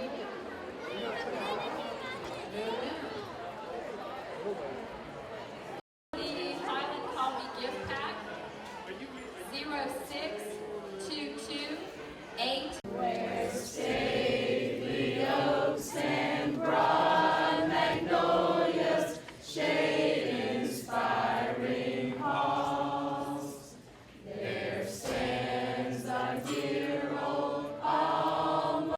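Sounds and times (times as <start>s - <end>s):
choir singing: 12.8s - 28.9s.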